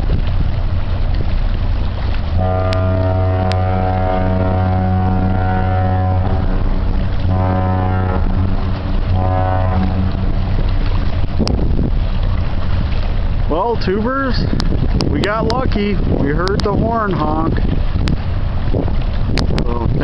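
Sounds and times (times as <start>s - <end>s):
wind buffeting microphone: 0.0s - 20.0s
ship horn blasts: 1.9s - 13.8s.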